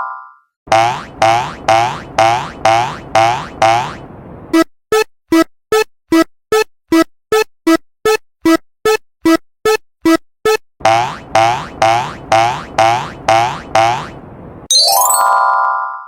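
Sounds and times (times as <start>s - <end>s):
cartoon boing: 0.7s - 4.0s, 10.8s - 14.1s
electronic crossing bell chime: 14.7s - 16.0s.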